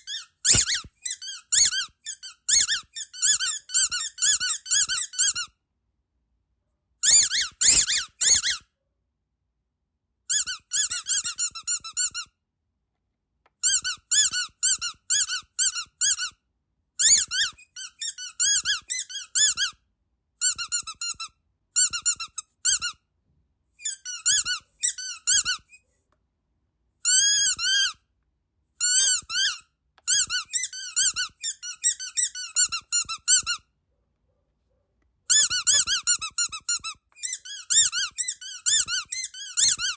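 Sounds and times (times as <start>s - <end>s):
squeaky dog toy squeaking: 0.0s - 5.6s, 7.0s - 8.7s, 10.3s - 12.4s, 13.6s - 16.4s, 17.0s - 19.8s, 20.4s - 23.0s, 23.8s - 25.9s, 27.0s - 28.0s, 28.8s - 33.7s, 35.3s - 39.9s.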